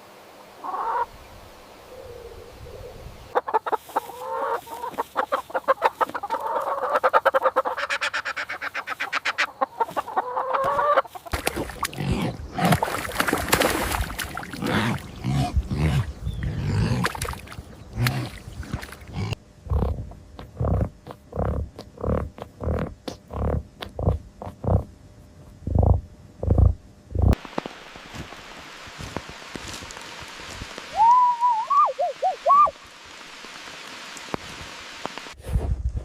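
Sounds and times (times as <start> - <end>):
fowl calling in pulsing notes: 0.6 - 1.1, 3.3 - 11.3.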